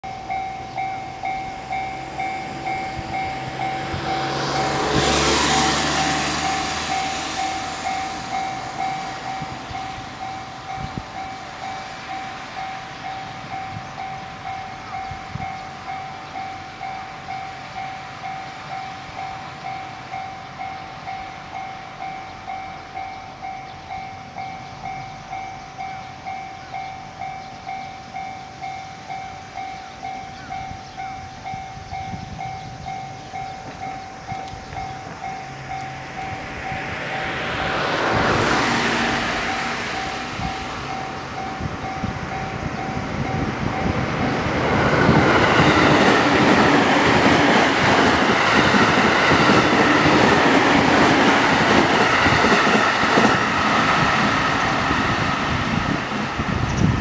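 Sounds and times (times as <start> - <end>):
level-crossing bell dinging: 0.0 - 53.7
electric train passing: 0.0 - 57.0.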